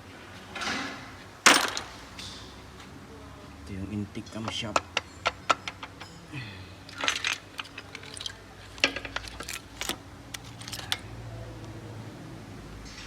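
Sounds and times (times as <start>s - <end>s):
metal parts and tools clinking: 1.4s - 2.4s, 4.2s - 11.2s.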